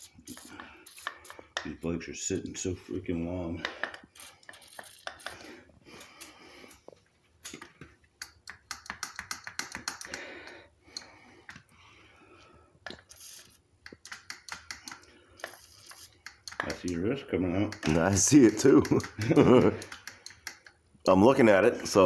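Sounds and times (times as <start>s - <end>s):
small metallic clicks and taps: 6.0s - 10.2s, 12.8s - 17.0s, 17.6s - 20.8s.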